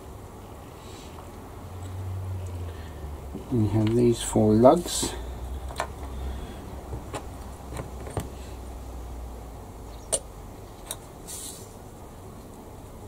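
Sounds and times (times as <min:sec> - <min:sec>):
rustle: 0:00.0 - 0:06.7, 0:09.7 - 0:13.0.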